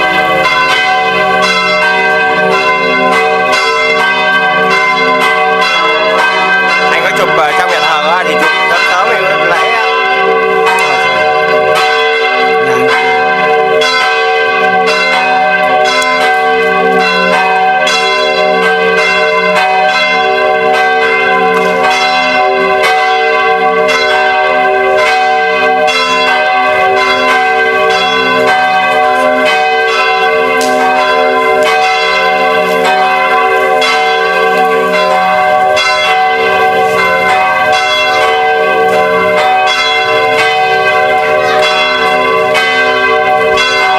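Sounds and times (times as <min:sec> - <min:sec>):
church bells pealing: 0:00.0 - 0:43.9.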